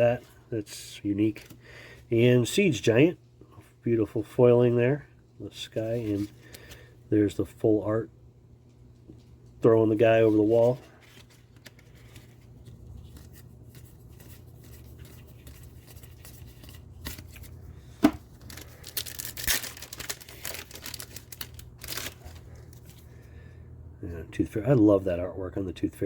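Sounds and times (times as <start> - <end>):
low steady hum: 0.0 - 26.0
foil wrapper tearing and crinkling: 18.3 - 23.0.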